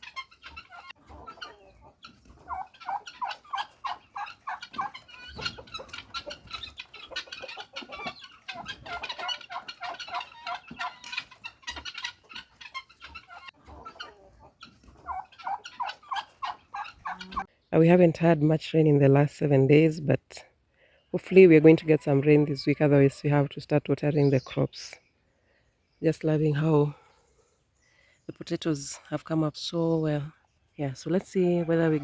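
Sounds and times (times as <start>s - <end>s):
fowl clucking: 0.0s - 17.5s.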